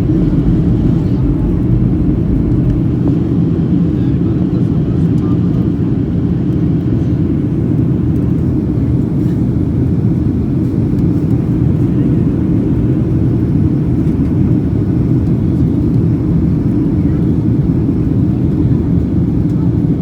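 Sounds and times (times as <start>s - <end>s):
airplane low rumble: 0.0s - 20.0s.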